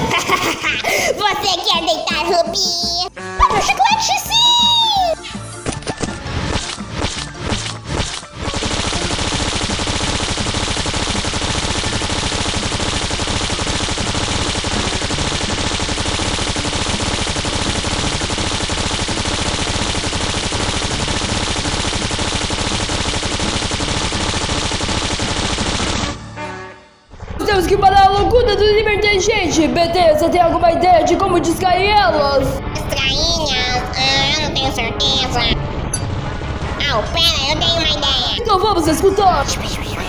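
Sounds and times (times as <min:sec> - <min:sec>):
rapid machine-gun fire: 0:05.9 - 0:26.5, 0:36.2 - 0:40.0.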